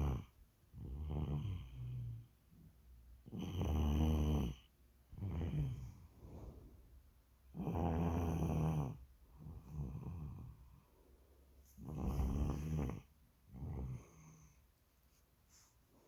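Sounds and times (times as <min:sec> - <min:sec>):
young child snoring: 0:00.0 - 0:02.2, 0:03.3 - 0:04.6, 0:05.2 - 0:06.8, 0:07.6 - 0:10.6, 0:11.8 - 0:14.6.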